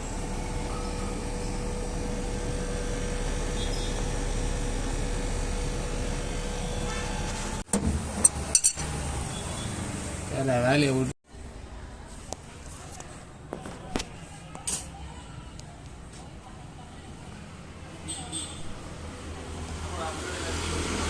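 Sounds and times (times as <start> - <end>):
mechanical hum with low rumble: 0.0 - 12.6.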